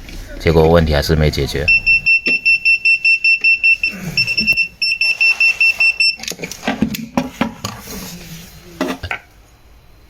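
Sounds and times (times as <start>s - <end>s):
electronic buzzer beeping rapidly: 1.7s - 6.2s.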